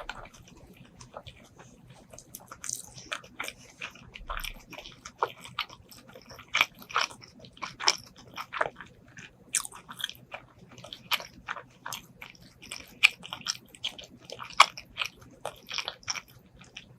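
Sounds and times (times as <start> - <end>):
chewing and biting: 0.0 - 16.9.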